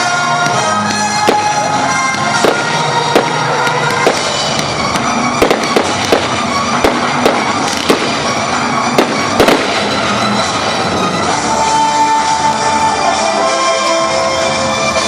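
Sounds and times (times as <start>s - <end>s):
firework bangs: 0.0s - 11.9s
music: 0.0s - 15.0s.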